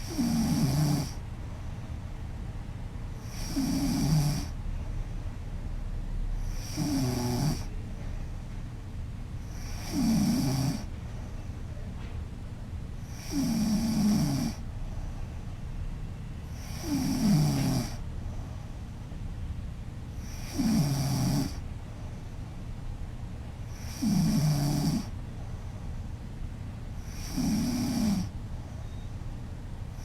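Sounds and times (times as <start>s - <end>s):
woman snoring loudly: 0.0s - 1.2s, 3.2s - 4.6s, 6.5s - 7.7s, 9.5s - 10.9s, 13.1s - 14.6s, 16.6s - 18.0s, 20.2s - 21.6s, 23.8s - 25.1s, 27.0s - 28.3s.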